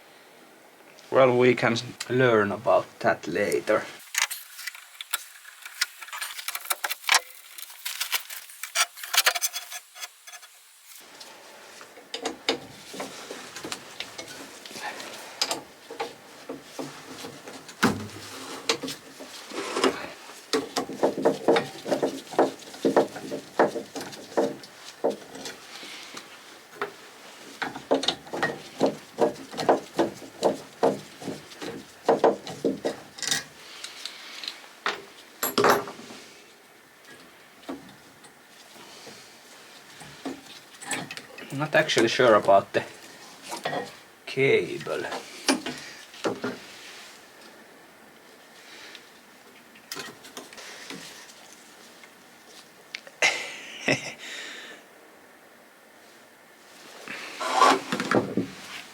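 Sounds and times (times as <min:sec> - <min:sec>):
clicks and taps on engine parts: 0:20.5 - 0:25.6, 0:27.6 - 0:33.2.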